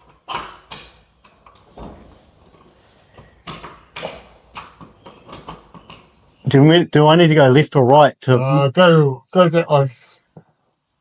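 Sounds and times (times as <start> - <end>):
knocks and light clatters: 0.0 - 6.5.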